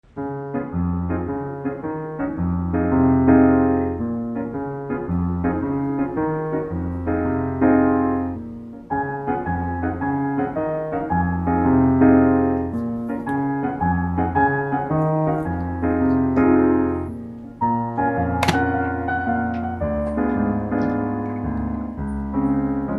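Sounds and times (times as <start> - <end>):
gentle piano music: 0.0 - 22.9
sharp click: 18.4 - 18.8.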